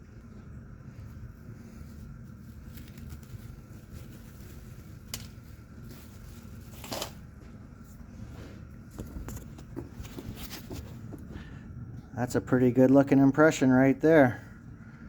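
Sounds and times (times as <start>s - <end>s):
soft knocks and scraping: 7.4s - 11.5s.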